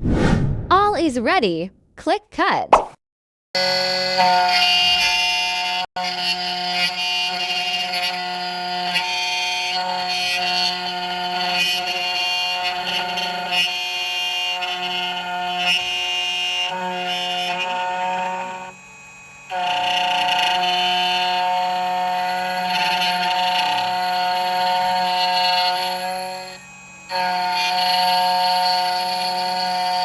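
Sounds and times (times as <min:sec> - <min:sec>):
key cutting machine whining: 0:03.6 - 0:30.0.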